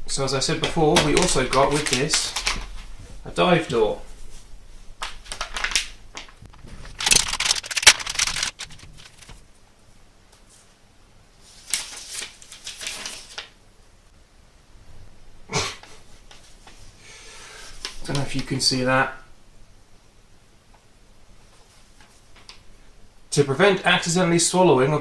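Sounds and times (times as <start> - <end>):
packaging rustling and crackling: 0.6 - 3.0, 5.0 - 9.5.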